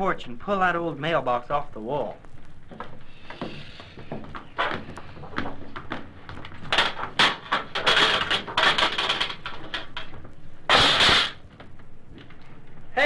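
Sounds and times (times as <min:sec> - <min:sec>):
footsteps: 0:01.4 - 0:13.0
metal scraping and wrenching: 0:06.4 - 0:11.7
mailbox crashing down: 0:06.6 - 0:11.7.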